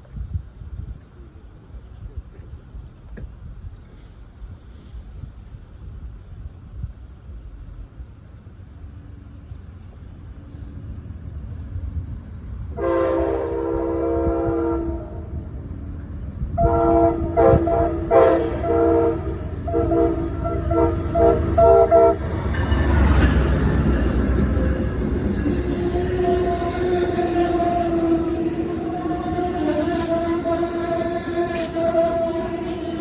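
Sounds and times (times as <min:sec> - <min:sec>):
rail and wheel noise: 0:00.0 - 0:33.0
train rumble: 0:00.0 - 0:33.0
locomotive air horn: 0:12.8 - 0:15.4, 0:16.5 - 0:22.4, 0:25.3 - 0:33.0.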